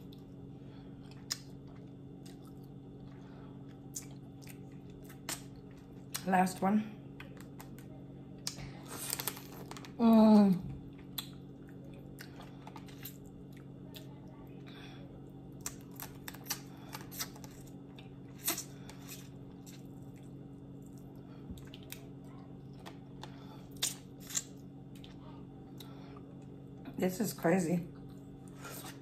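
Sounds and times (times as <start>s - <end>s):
steady low hum: 0.0s - 29.0s
chewing: 0.9s - 6.2s, 10.8s - 14.7s, 15.4s - 26.9s.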